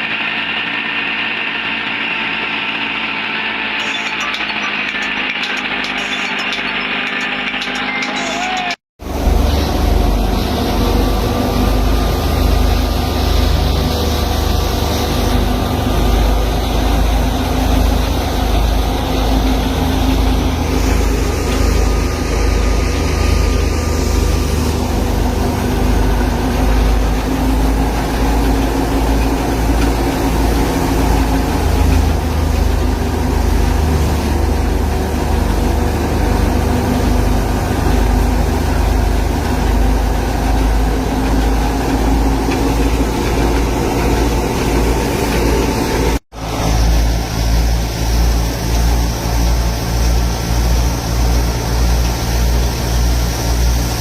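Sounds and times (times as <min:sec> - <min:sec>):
tractor engine droning: 0:00.0 - 0:54.0.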